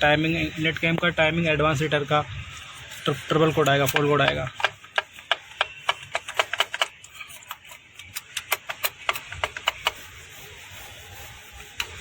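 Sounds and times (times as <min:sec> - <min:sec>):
hand ratchet clicking: 0:03.6 - 0:10.0.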